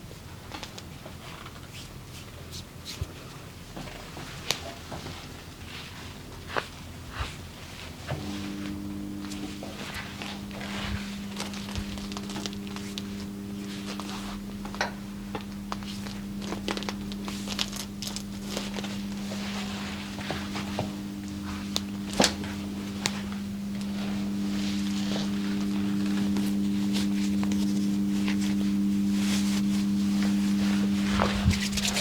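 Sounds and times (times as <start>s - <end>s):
steady low hum: 0.0s - 32.0s
skin rubbing: 1.7s - 3.1s, 26.5s - 32.0s.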